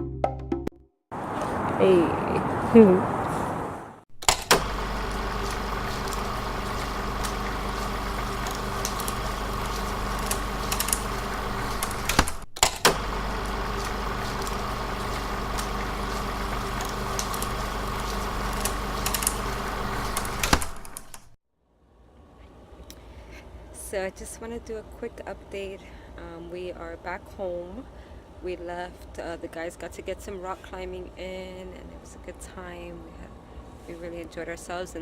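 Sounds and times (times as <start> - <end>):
car road and engine drone: 1.1 - 21.3
small clicks and rattles: 4.2 - 21.3.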